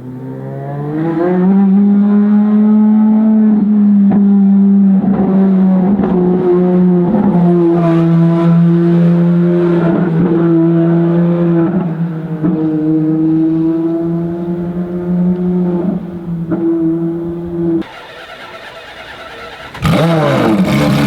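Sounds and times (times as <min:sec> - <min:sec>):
engine crackles: 0:17.8 - 0:21.0
race car engine running hard: 0:18.9 - 0:21.0.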